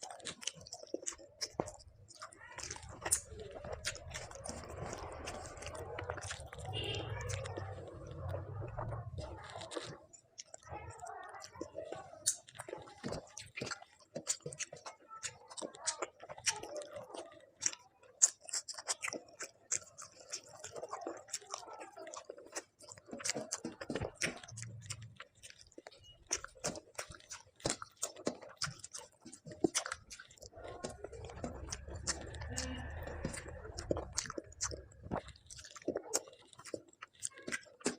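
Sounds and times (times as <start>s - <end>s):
crunching bites: 0.0s - 10.7s, 12.2s - 37.9s
person chewing with wet smacks: 0.0s - 37.9s.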